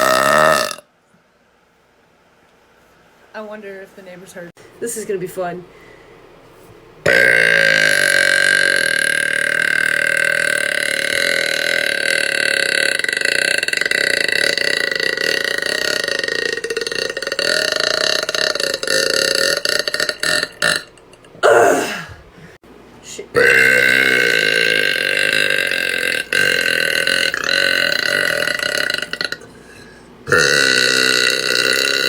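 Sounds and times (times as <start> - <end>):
woman belching: 0.0 - 0.9, 7.0 - 22.2, 23.4 - 29.5, 30.3 - 32.0.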